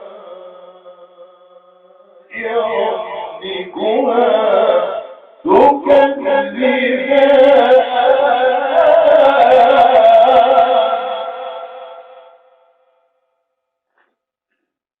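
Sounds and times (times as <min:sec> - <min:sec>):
man chanting recitation: 0:00.0 - 0:12.2.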